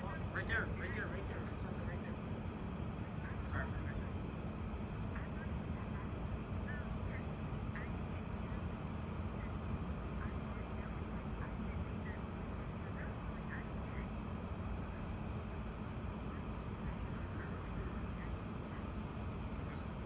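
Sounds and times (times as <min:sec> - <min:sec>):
high-pitched insect chorus: 0:03.4 - 0:06.3, 0:16.8 - 0:20.0.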